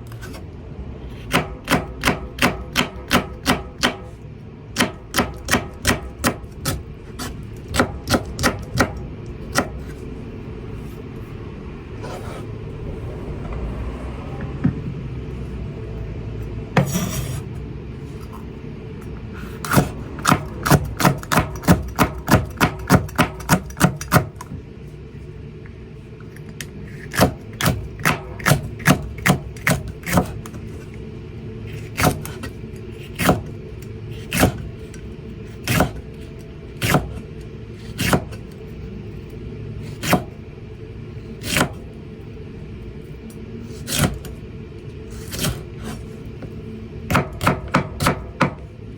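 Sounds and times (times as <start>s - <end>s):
steady low hum: 0.0s - 48.9s
knife chopping on cutting board: 1.2s - 4.1s, 4.8s - 10.0s, 16.8s - 17.4s, 19.6s - 24.3s, 27.0s - 30.5s, 31.9s - 32.5s, 33.1s - 33.5s, 34.2s - 34.7s, 35.6s - 36.0s, 36.8s - 37.2s, 37.9s - 38.4s, 39.9s - 40.3s, 43.8s - 44.2s, 47.1s - 48.6s.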